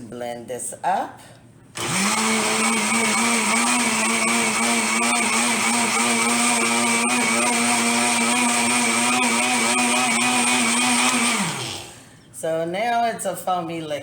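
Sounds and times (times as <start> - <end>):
electric blender running: 1.8 - 12.0.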